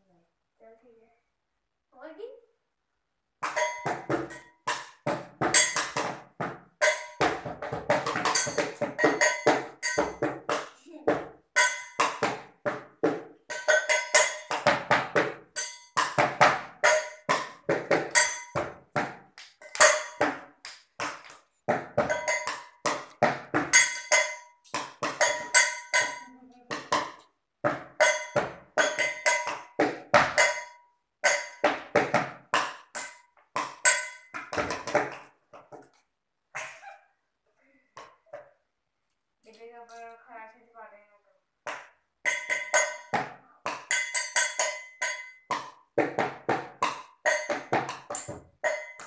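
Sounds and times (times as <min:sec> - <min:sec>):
fast rhythmic drumming: 0:03.5 - 0:26.2.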